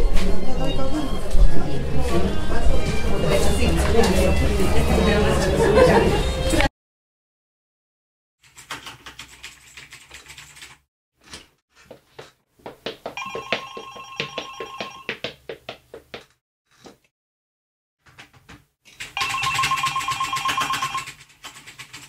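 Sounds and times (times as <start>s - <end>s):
telephone ringing: 13.2s - 15.2s, 19.2s - 21.1s.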